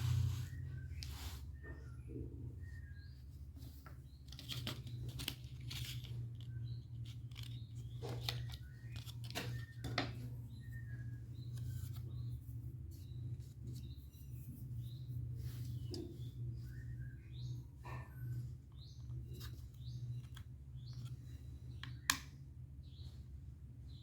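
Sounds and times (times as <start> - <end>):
steady low hum: 0.0 - 24.0
hands handling laptop parts: 3.5 - 14.9.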